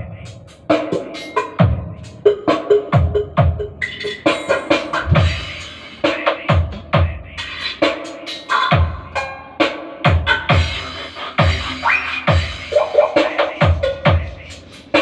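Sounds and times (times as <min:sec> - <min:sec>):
dance music with scratch effects: 0:00.0 - 0:15.0.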